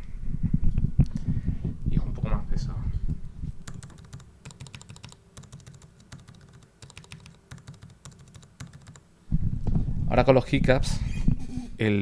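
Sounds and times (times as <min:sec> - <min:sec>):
muted keyboard switch clicks: 0:03.7 - 0:09.0.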